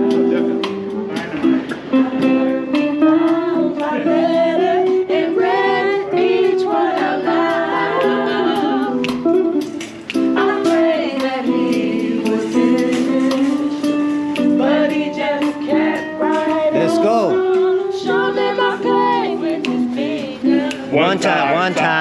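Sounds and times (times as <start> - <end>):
acoustic guitar chords: 0.0 - 22.0
person singing: 1.1 - 9.0, 14.6 - 22.0.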